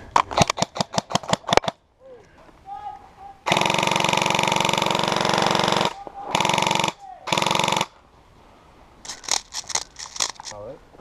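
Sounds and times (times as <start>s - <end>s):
airsoft gun firing bursts: 3.5s - 7.9s
sharp clicks: 9.1s - 10.6s.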